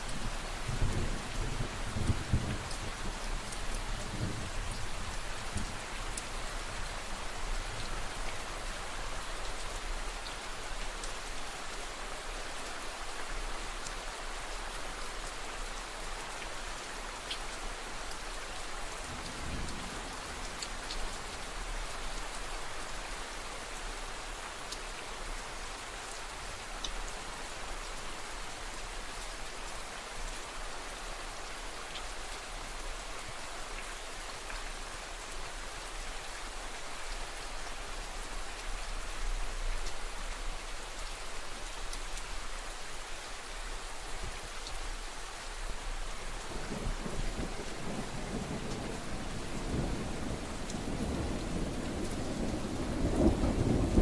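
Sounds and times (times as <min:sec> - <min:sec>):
steady rain falling: 0:00.0 - 0:54.0
distant thunder rumbles: 0:46.6 - 0:54.0.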